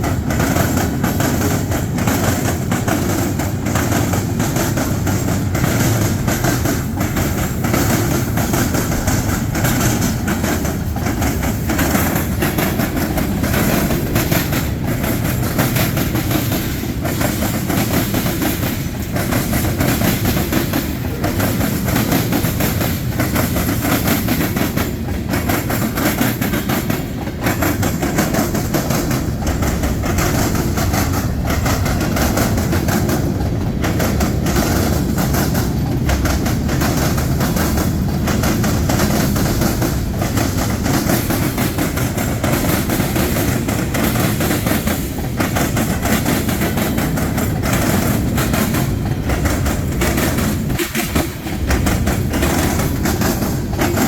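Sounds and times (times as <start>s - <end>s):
freight train wheels rumbling: 0.0s - 54.0s
wheels clicking over rail joints: 0.0s - 54.0s.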